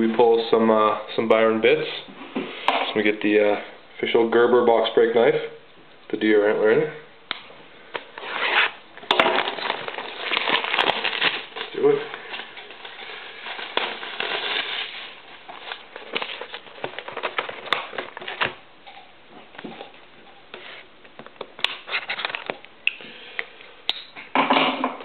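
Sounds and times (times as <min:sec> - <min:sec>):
plastic wrap crinkling and tearing: 0:08.0 - 0:18.7, 0:21.4 - 0:22.7.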